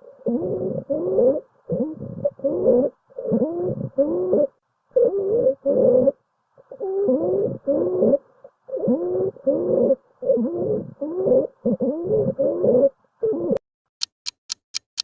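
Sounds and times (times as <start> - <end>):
sharp clock-like ticks: 14.0 - 15.0.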